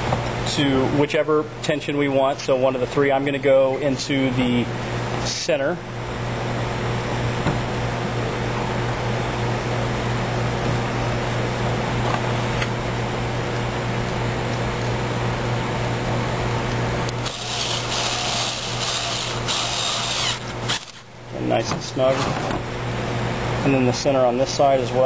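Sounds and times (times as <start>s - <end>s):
drill driving screw: 17.1s - 21.1s.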